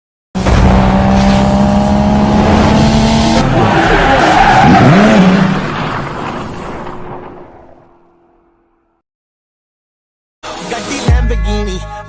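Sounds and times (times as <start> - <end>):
tyres skidding and squealing: 0.8 - 8.3.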